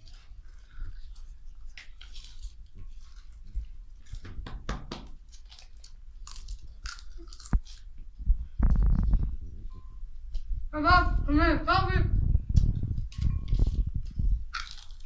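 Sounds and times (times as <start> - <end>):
chips crunched and chewed: 0.9 - 4.2, 5.2 - 8.0, 12.6 - 15.0.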